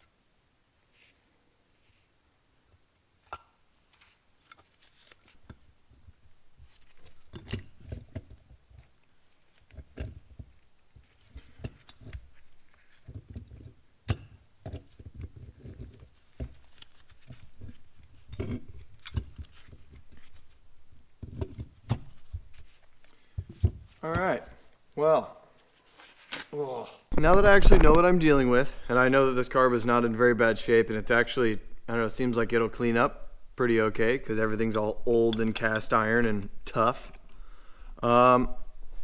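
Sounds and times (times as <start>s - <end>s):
rustling: 14.8s - 24.8s, 25.5s - 29.0s.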